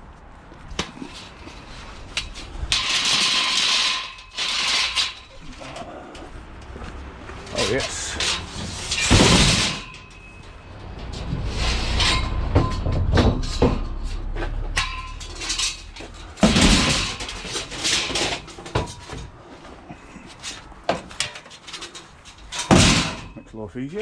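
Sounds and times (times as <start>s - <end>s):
scrap metal clanking: 0.7s - 23.6s
metal crashes: 0.8s - 5.8s, 7.5s - 19.3s, 20.3s - 23.5s
low rumble: 9.8s - 16.4s.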